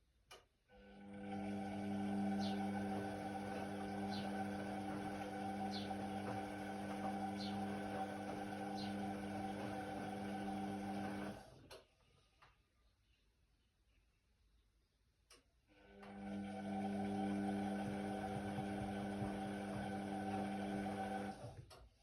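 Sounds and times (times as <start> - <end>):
washer-dryer pump humming: 0.8 - 11.8, 15.8 - 21.8.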